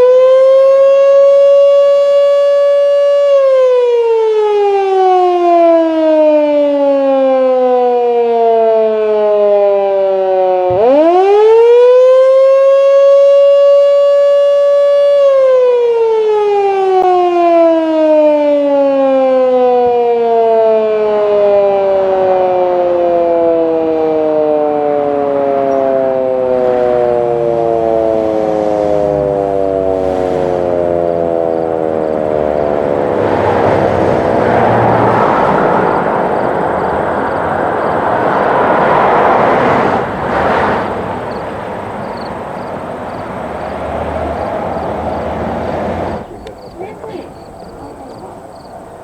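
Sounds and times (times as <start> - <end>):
fire siren winding down: 0.0 - 48.0.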